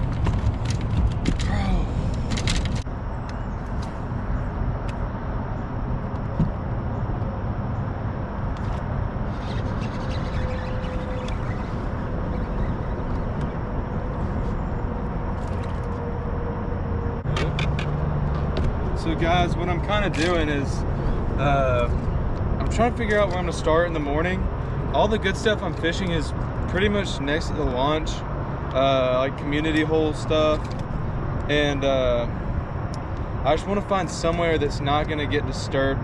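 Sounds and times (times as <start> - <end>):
outboard motor running: 9.3 - 16.1.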